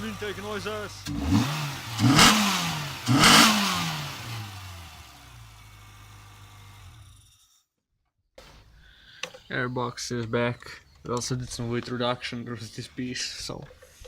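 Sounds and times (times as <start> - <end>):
open intake rush: 0.0 - 5.0
car engine revving: 0.0 - 7.3.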